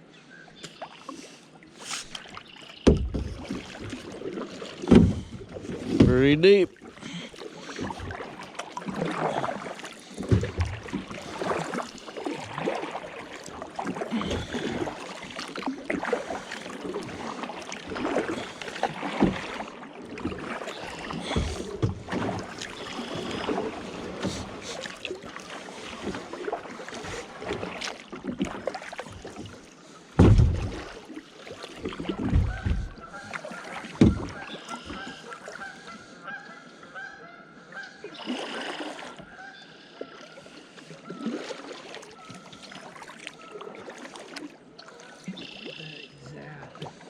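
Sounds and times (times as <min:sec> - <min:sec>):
paddle strokes splashing water: 0:00.3 - 0:47.0
low thump: 0:02.8 - 0:03.5, 0:04.9 - 0:05.4, 0:30.2 - 0:31.0, 0:32.2 - 0:33.0.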